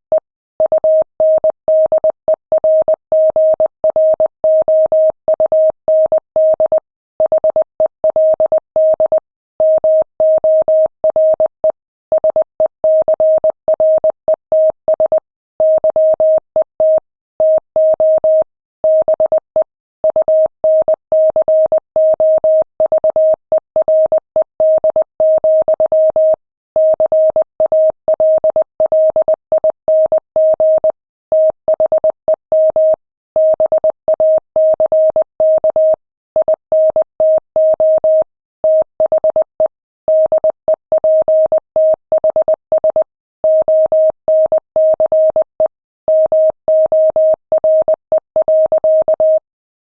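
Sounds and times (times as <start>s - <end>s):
morse code tone: 46.1s - 49.4s.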